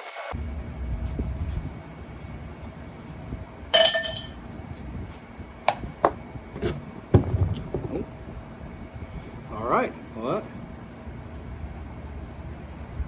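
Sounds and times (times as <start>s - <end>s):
metal clinking: 3.8s - 4.4s.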